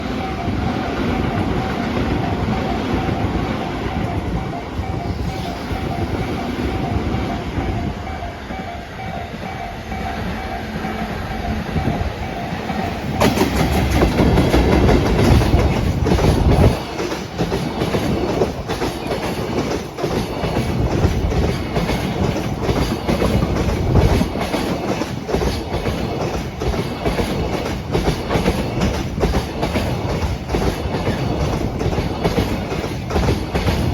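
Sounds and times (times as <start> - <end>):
electric locomotive passing: 0.0 - 33.9
train wheels clattering over rail joints: 10.4 - 33.9.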